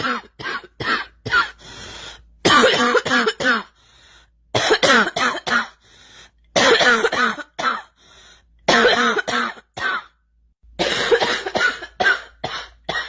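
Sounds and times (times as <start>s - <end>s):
girl coughing: 0.0s - 1.6s, 2.4s - 3.8s, 4.6s - 5.8s, 6.6s - 8.0s, 8.7s - 10.2s, 10.8s - 13.0s
faint breaths: 1.6s - 2.4s, 3.8s - 4.4s, 5.8s - 6.5s, 8.0s - 8.6s.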